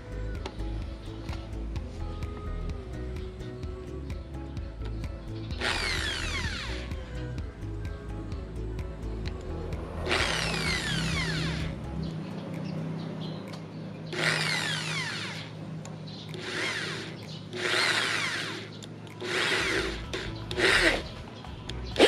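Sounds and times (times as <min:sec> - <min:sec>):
electric drill boring plastic: 0:05.6 - 0:07.0, 0:10.1 - 0:11.7, 0:14.1 - 0:15.6, 0:16.3 - 0:21.2.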